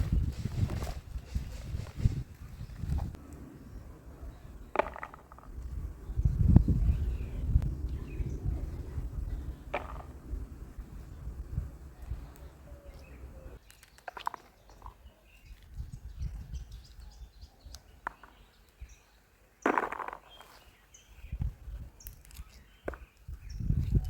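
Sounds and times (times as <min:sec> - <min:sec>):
low rumble: 0:05.4 - 0:13.6
bird chirps: 0:11.0 - 0:19.2.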